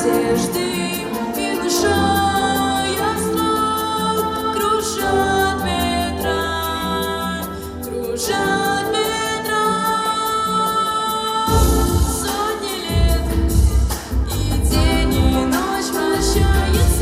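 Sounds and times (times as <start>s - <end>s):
instrumental backing: 0.0s - 17.0s
person singing: 0.0s - 17.0s
deep bass: 12.9s - 15.5s, 16.2s - 17.0s.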